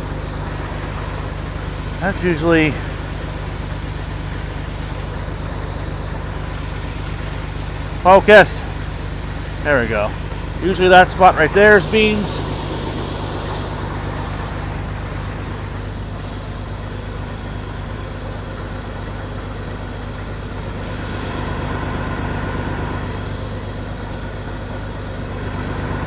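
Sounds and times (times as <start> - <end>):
engine idling: 0.0 - 26.0.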